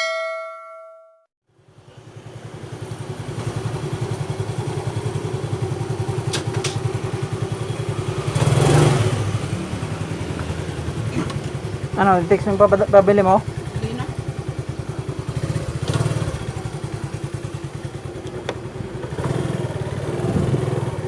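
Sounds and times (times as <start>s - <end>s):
ringing chime: 0.0s - 1.3s
motorcycle engine running: 1.6s - 21.0s.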